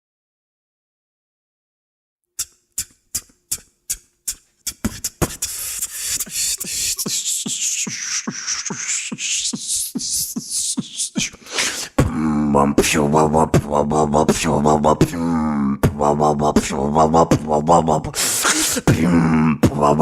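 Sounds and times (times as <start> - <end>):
beatboxing mouth clicks: 2.4 - 20.0
sweeping hiss: 5.3 - 10.7.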